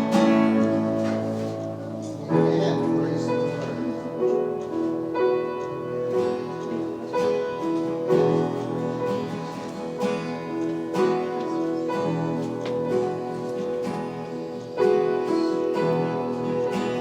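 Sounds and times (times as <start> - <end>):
guitar playing chords: 0.0 - 17.0
piano or keyboard: 0.0 - 17.0.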